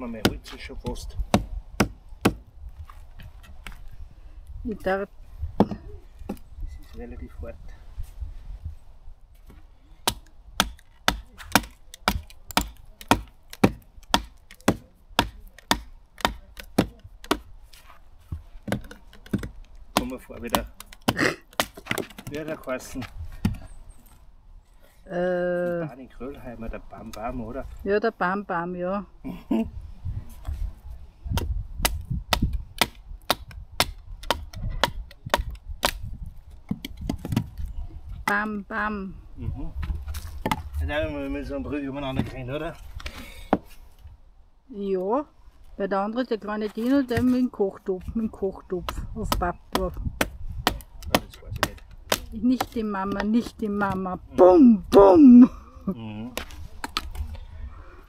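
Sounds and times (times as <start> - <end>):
axe chopping firewood: 0.0 - 2.5, 5.6 - 6.5, 9.4 - 17.6, 18.3 - 23.7, 31.3 - 38.5, 39.8 - 40.7, 46.8 - 48.2, 48.8 - 55.2, 56.3 - 57.3.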